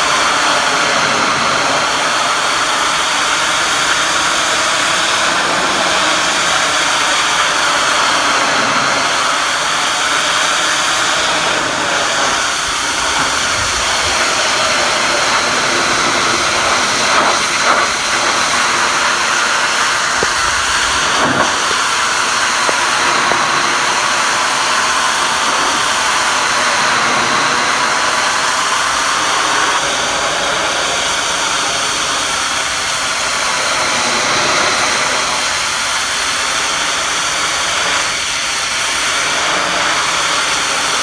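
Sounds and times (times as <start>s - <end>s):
pressure washer spraying brick: 0.0s - 41.0s.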